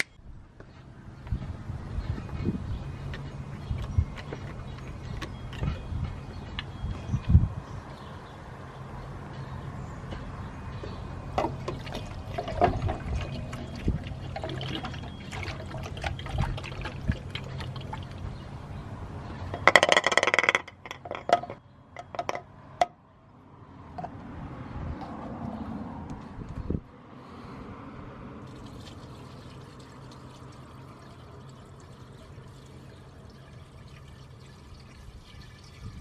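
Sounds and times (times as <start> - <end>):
liquid pouring and gurgling: 11.4 - 18.5, 28.4 - 36.0
clicks and knocks: 19.5 - 23.0.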